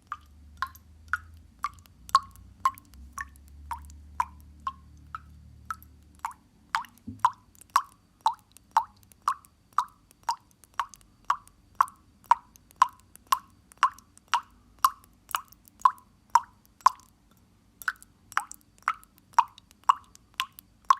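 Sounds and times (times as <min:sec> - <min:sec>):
water drops plopping: 0:00.0 - 0:17.1, 0:17.8 - 0:20.9.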